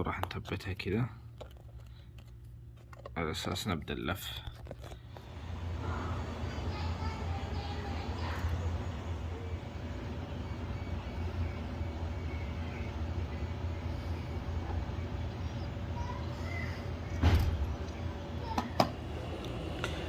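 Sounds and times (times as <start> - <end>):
low hum: 4.4 - 20.0.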